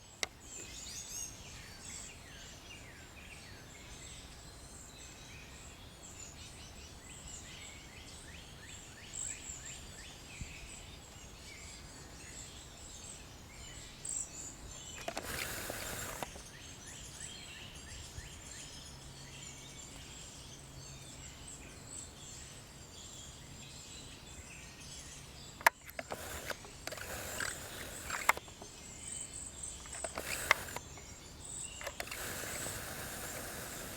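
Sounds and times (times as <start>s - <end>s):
small songbirds calling: 0.0s - 33.9s
sharp click: 15.0s - 16.4s, 25.6s - 28.7s, 29.7s - 31.2s, 31.8s - 33.9s.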